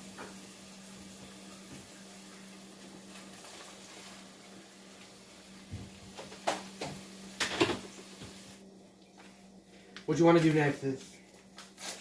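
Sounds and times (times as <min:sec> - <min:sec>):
faint steady hiss: 0:00.0 - 0:12.0
pots and utensils clinking: 0:06.2 - 0:08.0.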